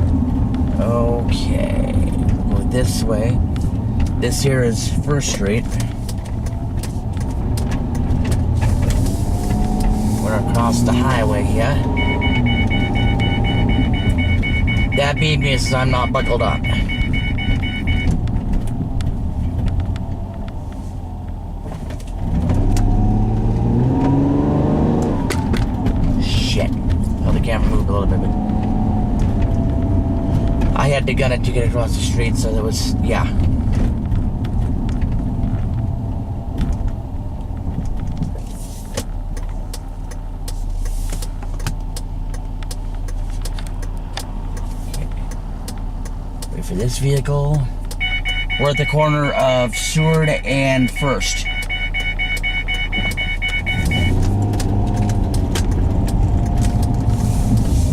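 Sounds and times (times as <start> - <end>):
car engine and road noise: 0.0 - 57.9
seatbelt warning chime: 10.6 - 18.2, 47.9 - 54.5
light clicks and rattles: 25.3 - 48.1.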